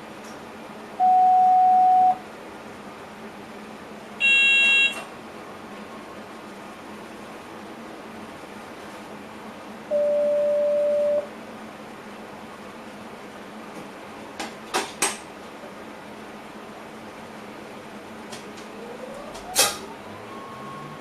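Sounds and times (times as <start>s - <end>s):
train cab running noise: 17.6s - 21.0s.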